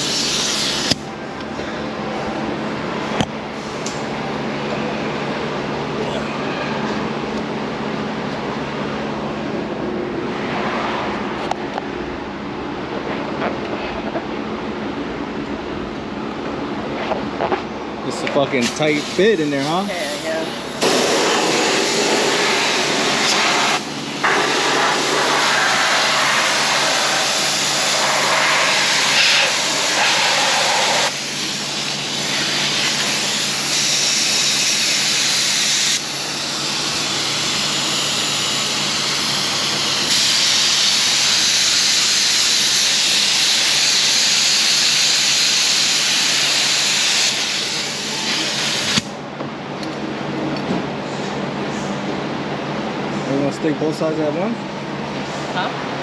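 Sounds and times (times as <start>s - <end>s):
spray adhesive hissing: 0.0s - 1.0s, 18.6s - 49.1s.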